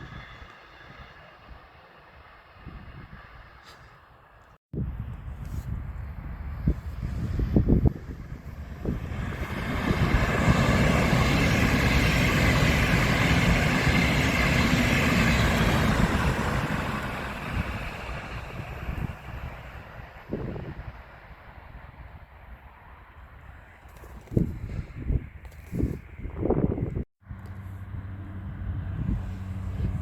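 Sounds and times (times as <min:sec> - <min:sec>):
train wheels rolling on rails: 0:08.0 - 0:21.6.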